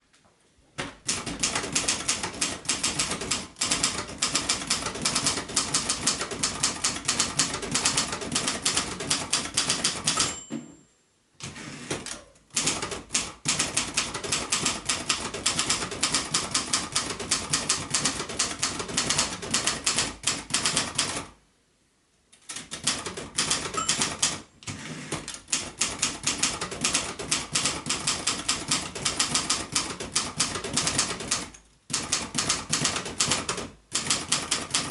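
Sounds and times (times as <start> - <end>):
typewriter keystrokes: 0.9 - 10.4, 11.4 - 21.3, 22.4 - 34.9
typewriter bell ring: 9.6 - 10.8, 23.6 - 24.4.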